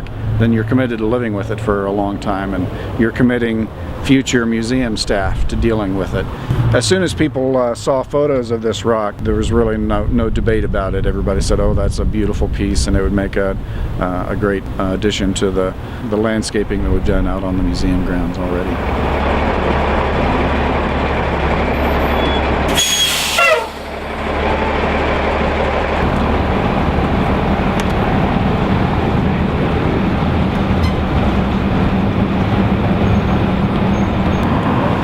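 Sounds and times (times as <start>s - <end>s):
heavy engine running: 0.0s - 35.0s
loud air hiss: 22.7s - 24.0s.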